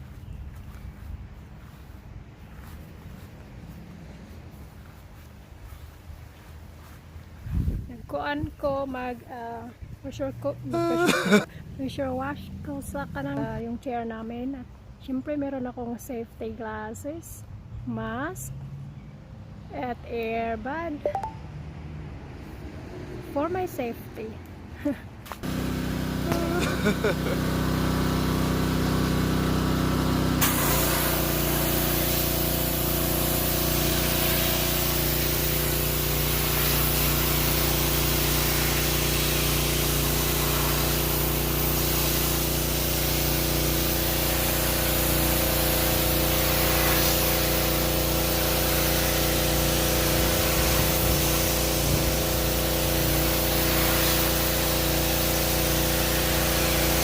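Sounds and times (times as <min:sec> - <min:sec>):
high-pressure water jet hissing: 0:10.8 - 0:11.5, 0:25.4 - 0:57.0
pressure washer motor humming: 0:10.8 - 0:11.5, 0:25.4 - 0:57.0.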